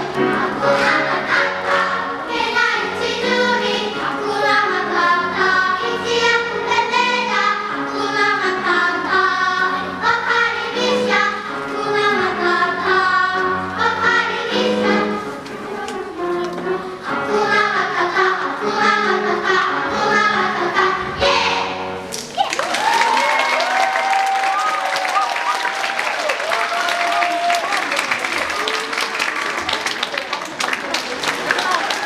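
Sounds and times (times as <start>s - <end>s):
children's choir singing: 0.0s - 22.1s.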